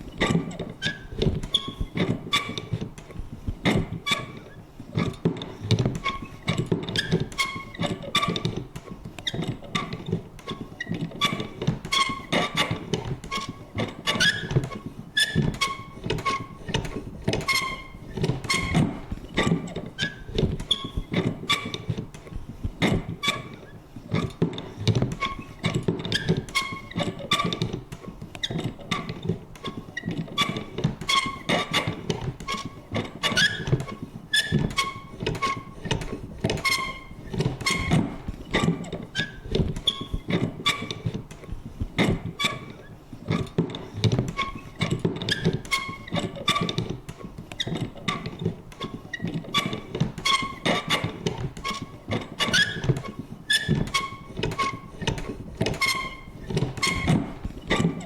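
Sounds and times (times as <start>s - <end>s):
creaking squeak of mechanism: 0.1s - 58.0s
paper punch clunking and clicking: 0.1s - 58.0s.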